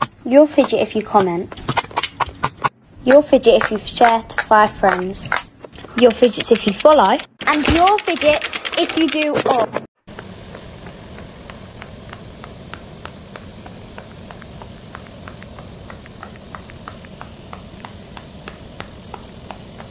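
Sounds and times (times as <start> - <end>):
fidget toy clicking: 6.0 - 9.6
steady hiss: 10.1 - 19.9.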